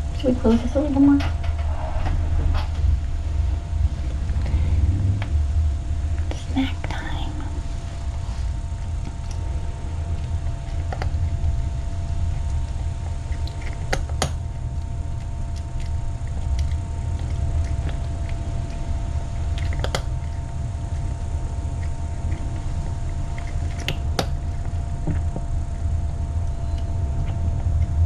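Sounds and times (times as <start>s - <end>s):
steady low hum: 0.0s - 28.0s
cat chewing clicks: 8.6s - 28.0s.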